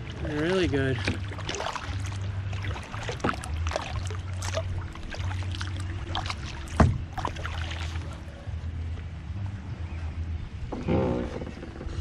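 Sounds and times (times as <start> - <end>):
paddle splashing in water: 0.0 - 8.3.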